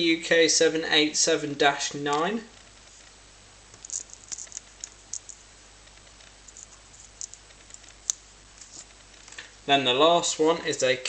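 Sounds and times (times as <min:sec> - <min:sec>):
photo prints rustling: 0:02.1 - 0:09.6.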